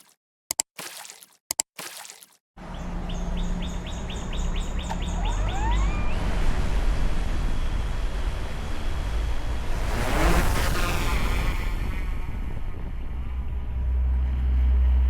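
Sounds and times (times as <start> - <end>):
bird chirping: 2.7 - 6.3
steady low rumble: 6.1 - 15.0.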